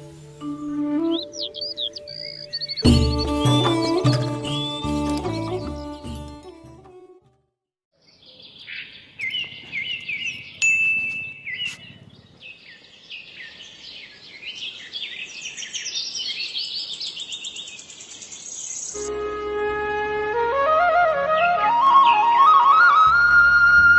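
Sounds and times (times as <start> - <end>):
birds chirping and singing: 0.9 - 6.3, 8.0 - 10.6, 11.2 - 20.4.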